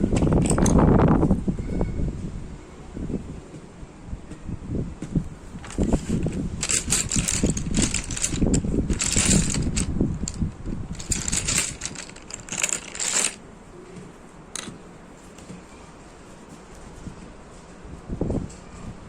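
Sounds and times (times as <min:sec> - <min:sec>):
wind buffeting microphone: 0:00.0 - 0:03.4, 0:04.1 - 0:12.9
scratchy rustling: 0:05.4 - 0:13.4.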